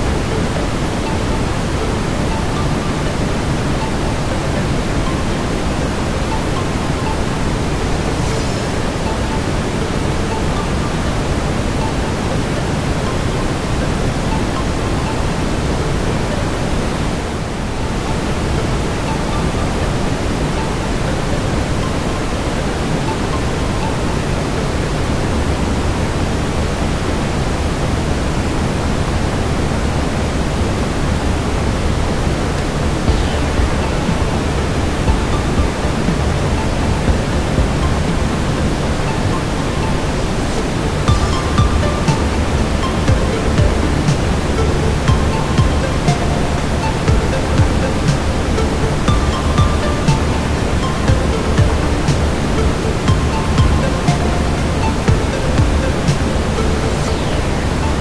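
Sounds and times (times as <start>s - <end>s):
deep brown noise hiss: 0.0s - 58.0s.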